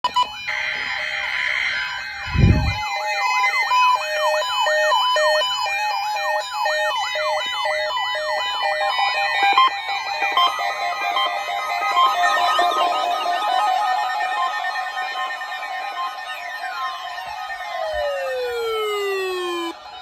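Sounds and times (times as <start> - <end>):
electronic siren sweeping: 0.1 - 4.1, 7.8 - 20.0
stepping synthesized notes: 17.3 - 19.7.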